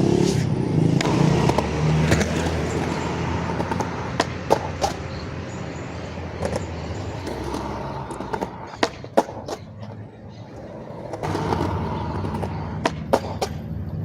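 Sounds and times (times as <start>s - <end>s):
skateboard wheels rolling on concrete: 0.0s - 14.0s
skateboard tail popping and landing: 1.0s - 5.0s, 6.4s - 9.7s, 11.0s - 13.6s.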